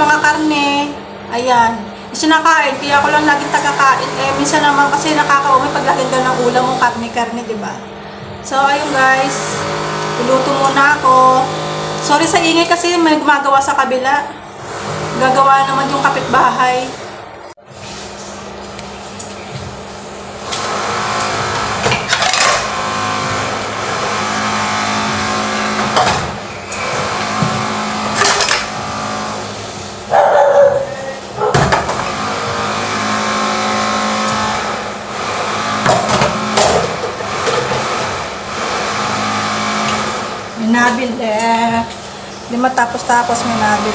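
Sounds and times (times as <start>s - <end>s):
power tool motor whining: 2.6s - 7.0s, 8.5s - 12.8s, 14.5s - 17.2s, 20.4s - 30.0s, 31.6s - 41.0s, 42.2s - 43.9s.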